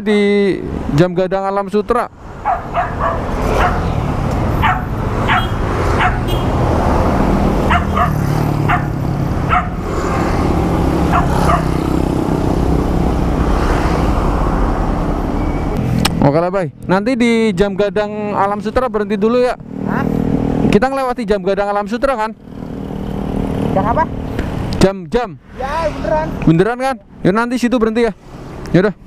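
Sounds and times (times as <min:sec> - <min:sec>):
dog barking: 0:02.4 - 0:03.9, 0:04.6 - 0:06.5, 0:07.6 - 0:09.9, 0:11.1 - 0:11.8.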